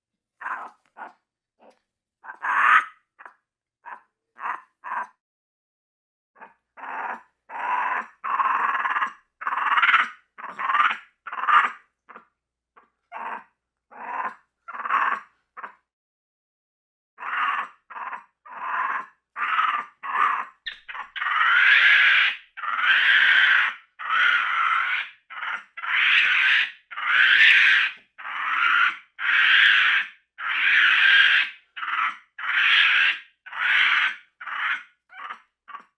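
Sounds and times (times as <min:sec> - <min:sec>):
monkey calling: 0:19.4 - 0:29.8.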